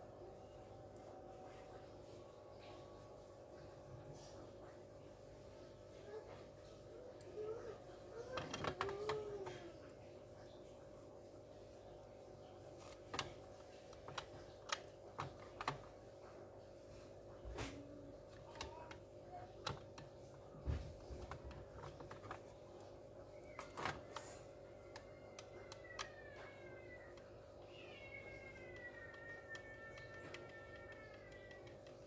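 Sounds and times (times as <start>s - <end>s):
faint hum: 0.0s - 32.0s
small parts clicking and tapping: 19.6s - 22.6s, 23.4s - 32.0s.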